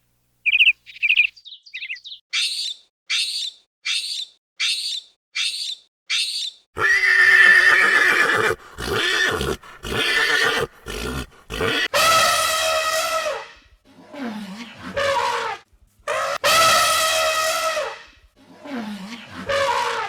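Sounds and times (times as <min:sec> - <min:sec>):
short high bird chirps: 0:00.4 - 0:06.6
horse neighing loudly: 0:06.8 - 0:13.5.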